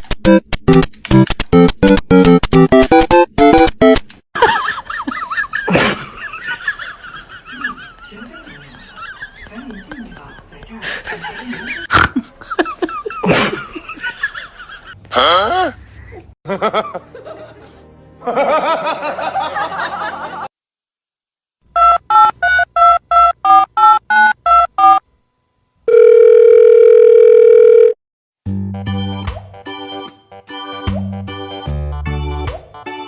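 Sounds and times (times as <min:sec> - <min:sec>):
dialling tone beeps: 0:25.9 - 0:28.0.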